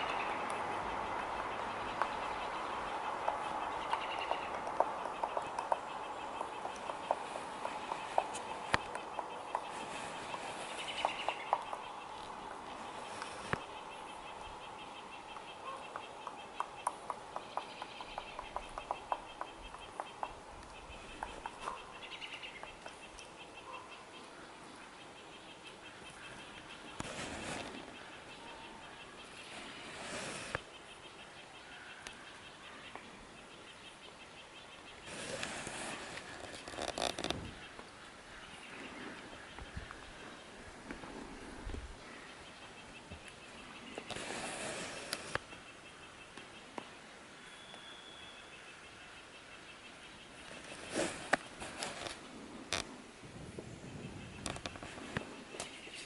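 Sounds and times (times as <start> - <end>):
woodpecker pecking at wood: 1.8 - 14.4, 15.2 - 23.3.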